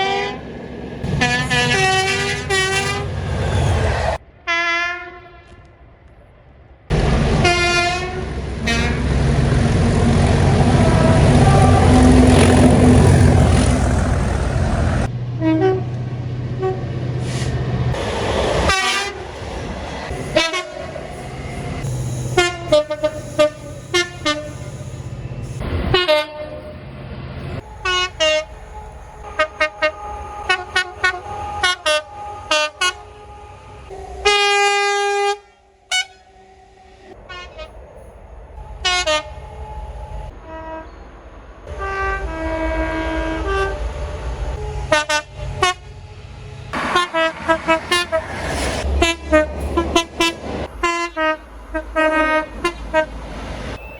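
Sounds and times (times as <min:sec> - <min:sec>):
long train horn blast: 0:00.0 - 0:03.3, 0:04.4 - 0:05.7, 0:07.4 - 0:09.2, 0:09.8 - 0:17.5, 0:18.6 - 0:19.3, 0:20.1 - 0:25.0, 0:25.6 - 0:26.8, 0:27.6 - 0:37.7, 0:38.8 - 0:39.5, 0:40.3 - 0:41.1, 0:41.7 - 0:53.9
passing train rush: 0:00.0 - 0:53.9
short train horn toots: 0:01.1 - 0:03.2, 0:10.7 - 0:13.2, 0:21.8 - 0:24.8, 0:29.2 - 0:36.5, 0:41.7 - 0:45.9, 0:46.8 - 0:53.1
low engine hum: 0:08.2 - 0:18.5.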